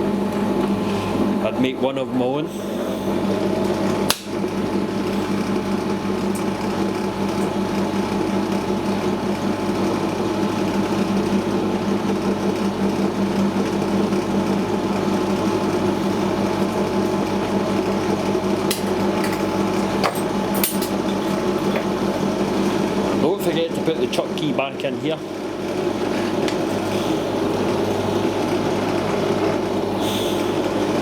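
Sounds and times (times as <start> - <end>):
bench drill motor humming: 25.2 - 31.0.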